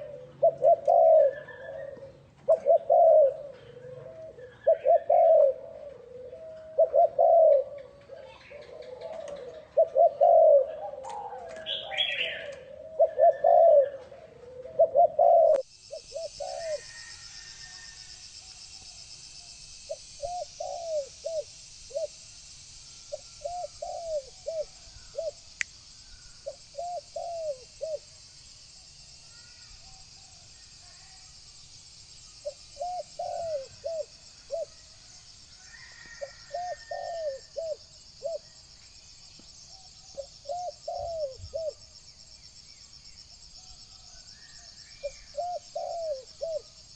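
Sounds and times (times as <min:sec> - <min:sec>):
dove cooing: 0:00.0 - 0:17.9, 0:19.9 - 0:22.2, 0:23.1 - 0:25.4, 0:26.4 - 0:28.1, 0:32.4 - 0:34.8, 0:35.7 - 0:38.6, 0:40.1 - 0:41.8, 0:45.0 - 0:46.7
steady high-pitched hiss: 0:00.0 - 0:46.9.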